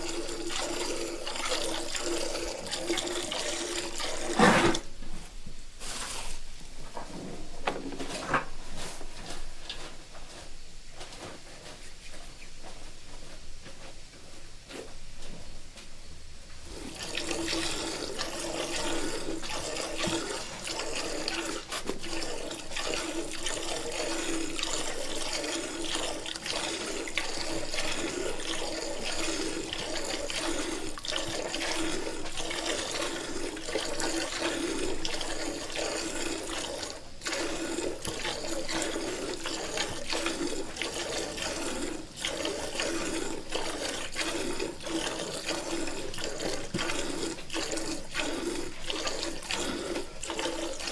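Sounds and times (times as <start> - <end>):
milk pouring and splashing: 0.0 - 4.9, 16.6 - 50.9.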